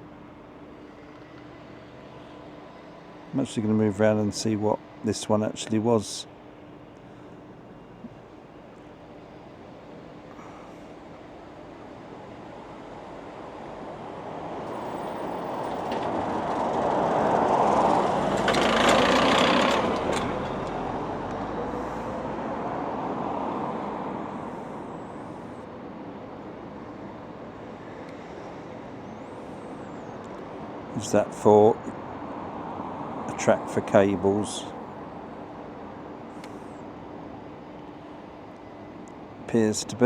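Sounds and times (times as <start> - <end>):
road vehicle passing by: 14.1 - 25.7.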